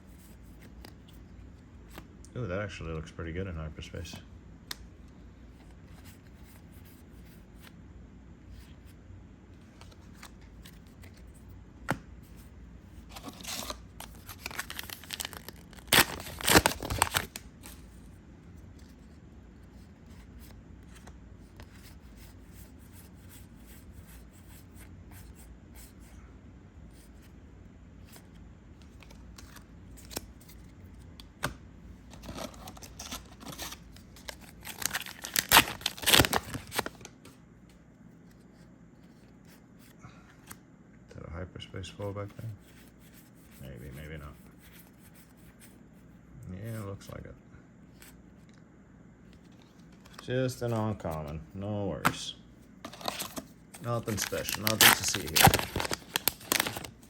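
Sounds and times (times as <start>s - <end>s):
foil wrappers tearing and crinkling: 13.1s - 17.8s, 32.1s - 37.1s, 52.9s - 57.0s.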